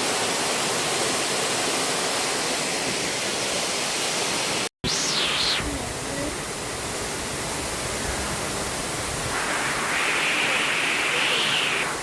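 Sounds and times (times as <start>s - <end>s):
waterfall rushing: 0.0s - 12.0s
bright hiss: 4.8s - 12.0s.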